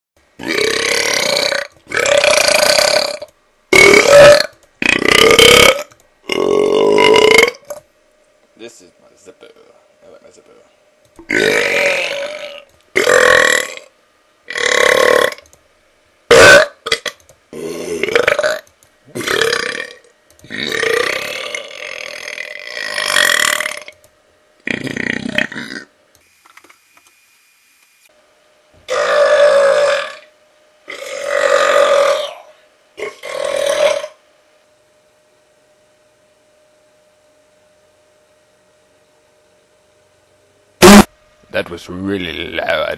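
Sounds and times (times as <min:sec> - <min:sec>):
man belching: 0:00.4 - 0:07.8, 0:11.3 - 0:13.9, 0:14.5 - 0:15.4, 0:16.3 - 0:23.9, 0:24.6 - 0:25.9, 0:28.9 - 0:30.3, 0:30.9 - 0:32.4, 0:33.0 - 0:34.2.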